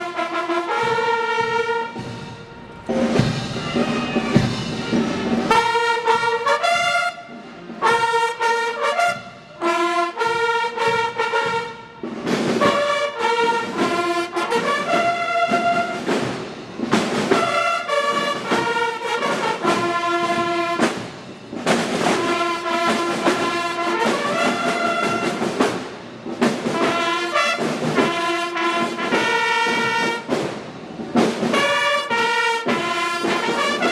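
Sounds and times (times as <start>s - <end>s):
military band bugles fanfare: 0.0s - 33.9s.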